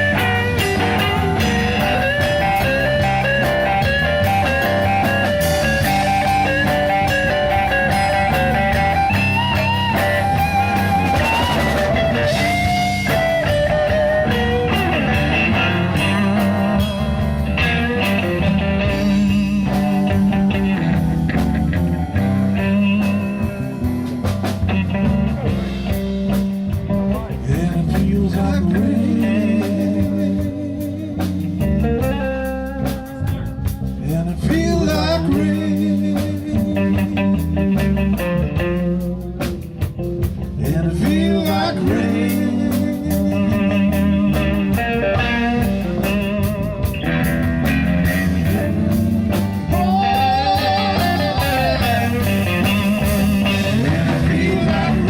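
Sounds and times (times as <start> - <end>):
lead guitar solo with bent notes: 0.0 - 27.8, 41.4 - 55.0
bass and drums: 0.0 - 55.0.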